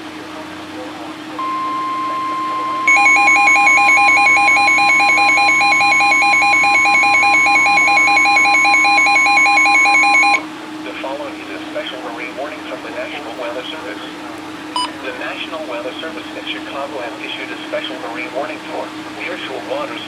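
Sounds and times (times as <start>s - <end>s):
fast alternating alarm beep: 1.4s - 10.4s
steady alert tone: 1.4s - 10.4s.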